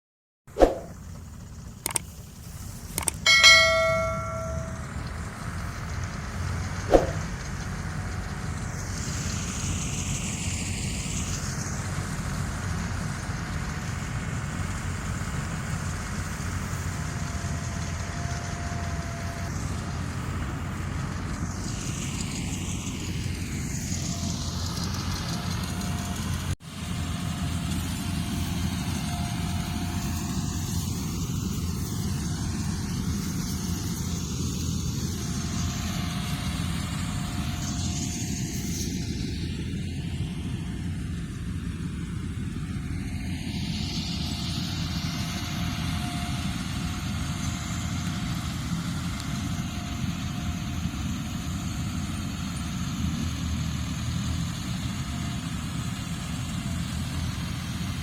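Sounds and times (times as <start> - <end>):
thin steady whine: 0.6 - 5.2
harvesting machine engine drone: 0.6 - 58.0.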